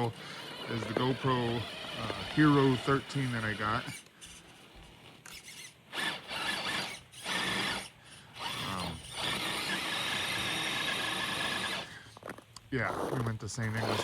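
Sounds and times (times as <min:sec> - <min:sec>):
electric motor whine: 0:00.0 - 0:14.0.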